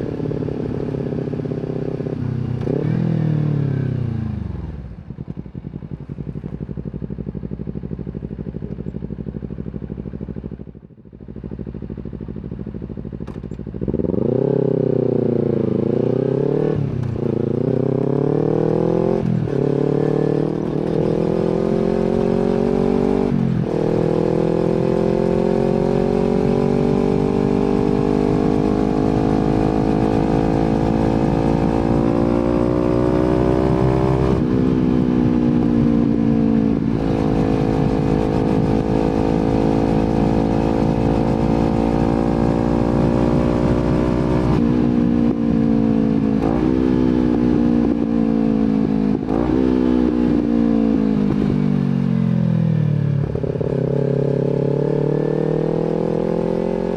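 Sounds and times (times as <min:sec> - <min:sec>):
motorcycle engine accelerating: 0:00.0 - 0:56.9.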